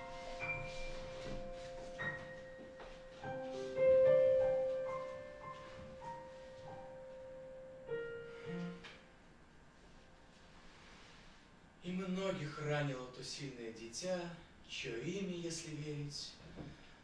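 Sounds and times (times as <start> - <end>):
slow piano notes: 0.0 - 10.1.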